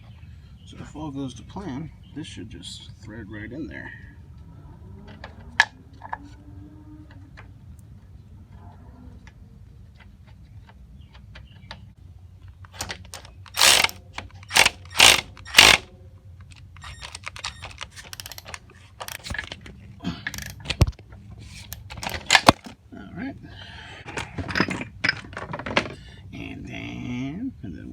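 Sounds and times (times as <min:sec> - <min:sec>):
metal tool clicks and rattles: 0:12.6 - 0:19.7, 0:20.3 - 0:22.7.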